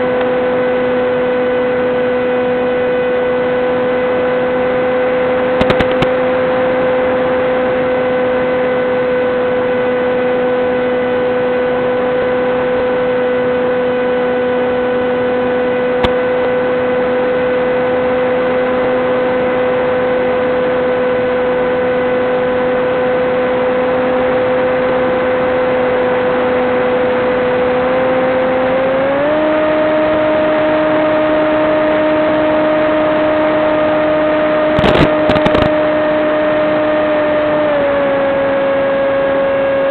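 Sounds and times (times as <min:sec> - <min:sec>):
electric motor and propeller whine: 0:00.0 - 0:39.9.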